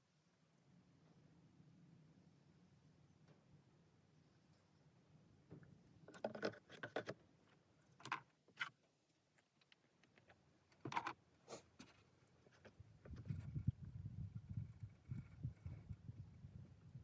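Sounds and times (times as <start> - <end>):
plastic bottles clicking and scraping: 6.1 - 7.2.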